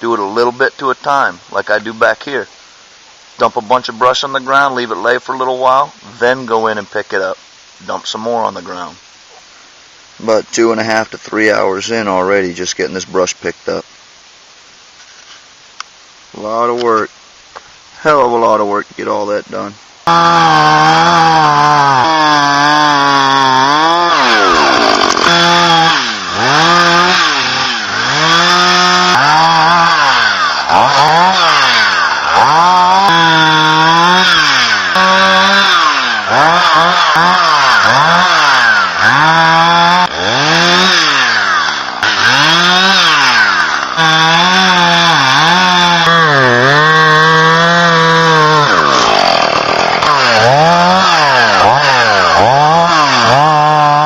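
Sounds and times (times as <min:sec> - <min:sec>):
chainsaw cutting wood: 0:20.0 - 0:54.0.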